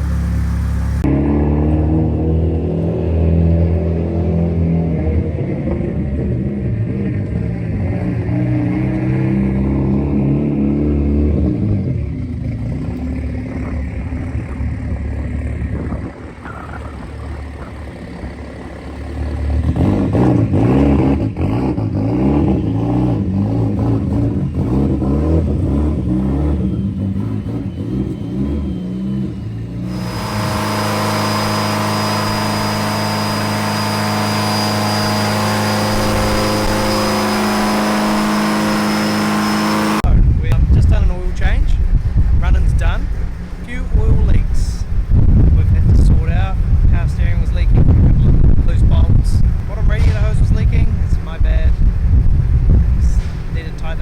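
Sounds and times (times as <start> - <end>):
car engine revving: 0.0 - 40.6
high whine: 27.8 - 43.2.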